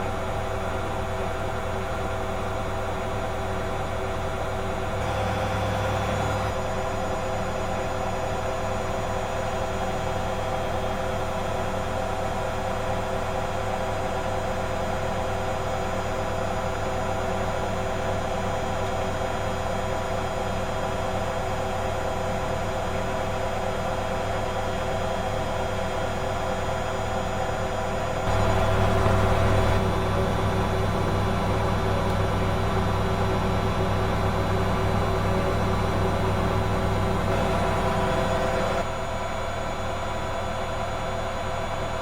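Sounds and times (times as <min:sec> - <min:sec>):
loud low hum: 0:04.8 - 0:06.6, 0:28.2 - 0:38.9
washing machine motor whine: 0:04.8 - 0:07.1, 0:28.2 - 0:39.4.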